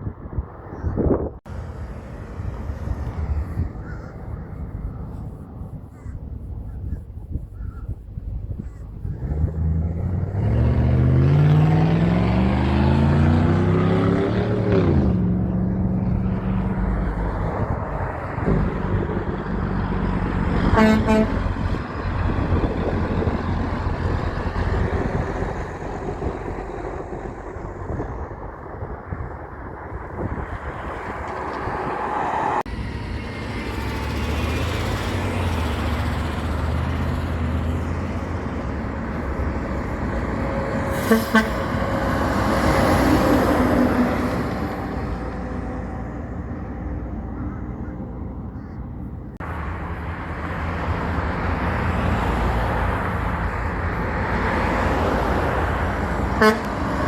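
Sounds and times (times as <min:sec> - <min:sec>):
traffic noise: 0:00.0 - 0:57.0
truck diesel engine revving: 0:09.0 - 0:57.0
short horn toot: 0:20.7 - 0:21.5, 0:40.9 - 0:41.8, 0:56.4 - 0:56.8.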